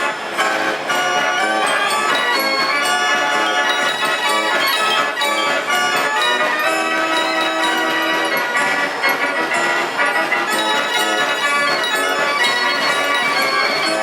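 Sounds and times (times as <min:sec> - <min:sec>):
fairground organ playing: 0:00.0 - 0:14.0.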